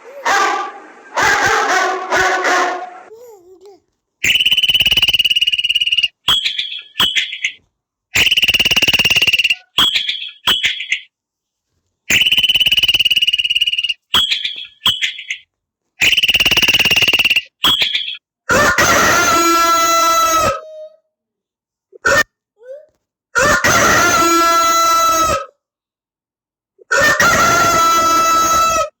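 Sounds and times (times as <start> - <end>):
frog call ringtone trills: 4.2 - 7.5, 8.2 - 11.0, 12.1 - 15.4, 16.0 - 18.2.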